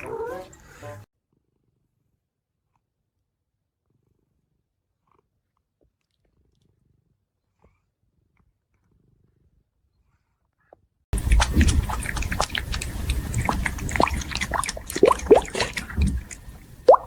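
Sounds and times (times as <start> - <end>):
faint cat purring: 11.2 - 17.0.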